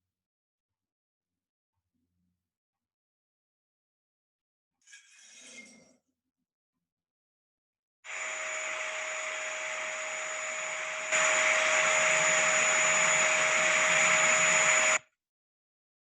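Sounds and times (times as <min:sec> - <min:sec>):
vacuum cleaner running: 0:08.1 - 0:15.0.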